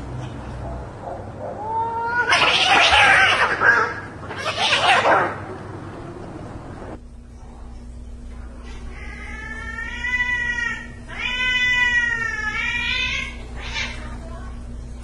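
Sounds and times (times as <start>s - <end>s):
cat yowling: 1.4s - 5.7s, 8.9s - 14.1s.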